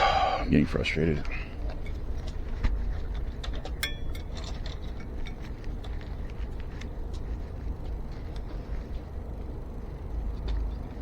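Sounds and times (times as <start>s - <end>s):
steady low rumble: 0.0s - 11.0s
metallic clink: 3.8s - 5.4s.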